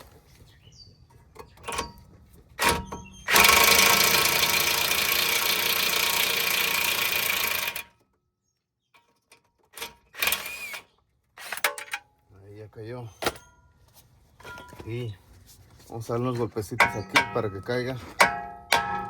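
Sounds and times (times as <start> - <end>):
impact wrench hammering: 2.6 - 7.9, 16.8 - 17.6, 18.2 - 19.0.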